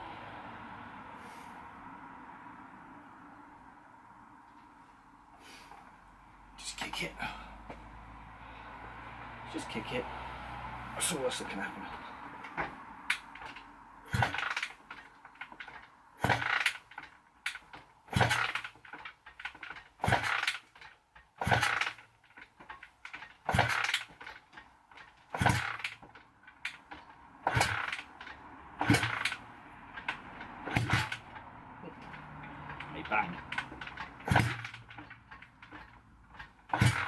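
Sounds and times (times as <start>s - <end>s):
motorcycle engine kickstarted: 9.6s - 37.0s.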